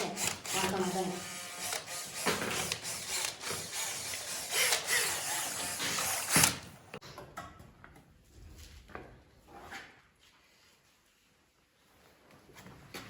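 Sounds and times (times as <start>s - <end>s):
tools scraping and clicking: 0.0s - 6.8s.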